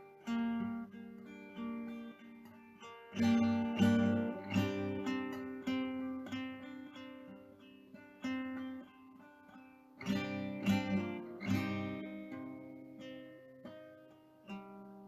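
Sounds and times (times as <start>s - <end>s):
acoustic guitar plucking and strumming: 0.0s - 15.0s.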